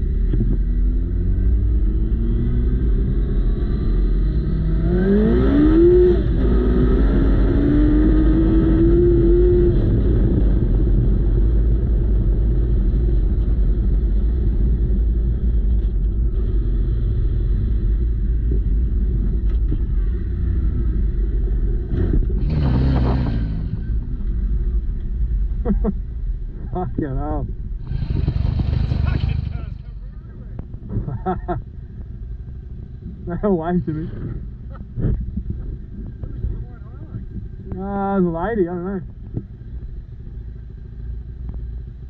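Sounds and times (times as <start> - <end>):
motorcycle engine revving: 0.0 - 11.8, 14.7 - 26.0, 26.6 - 42.0
loud burst of noise: 27.8 - 29.8.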